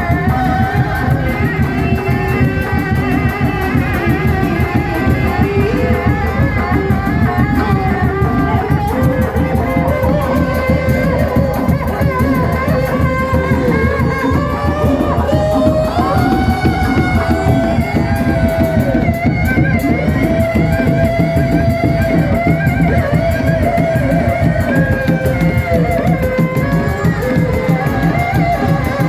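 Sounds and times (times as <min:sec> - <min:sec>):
fast drum rhythm: 0:00.0 - 0:29.0
wavering melody line: 0:00.0 - 0:29.0.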